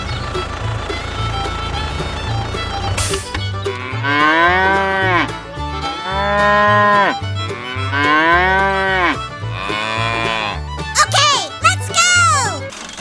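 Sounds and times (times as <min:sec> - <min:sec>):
background music with bass line: 0:00.0 - 0:11.0
cow mooing: 0:09.7 - 0:10.6.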